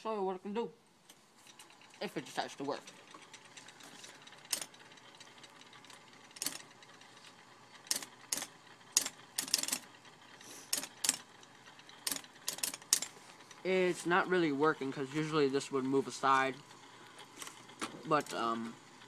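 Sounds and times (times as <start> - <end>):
typewriter keys clacking: 2.6 - 6.8, 7.8 - 9.8, 10.7 - 11.3, 12.0 - 13.1.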